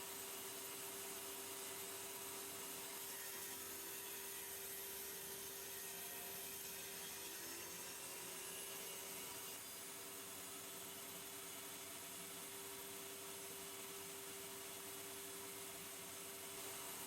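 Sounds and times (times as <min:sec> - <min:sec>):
table saw whining: 0:02.6 - 0:10.3.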